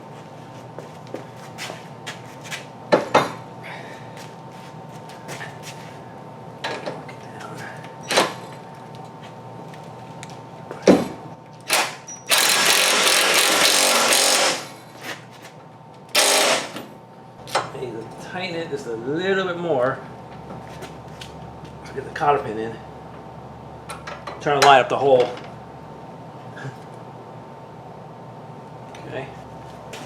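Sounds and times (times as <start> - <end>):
ratchet wrench clicking: 11.7 - 14.6, 16.2 - 16.8.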